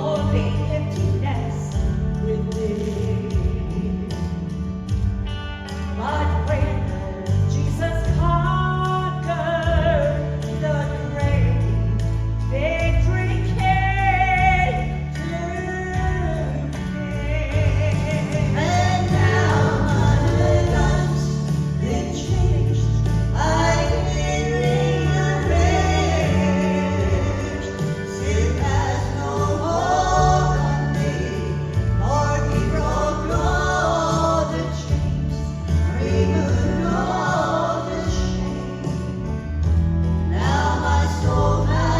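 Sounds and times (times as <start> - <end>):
instrumental accompaniment with bass: 0.0 - 41.9
women singing in harmony: 17.0 - 39.0, 40.3 - 41.9.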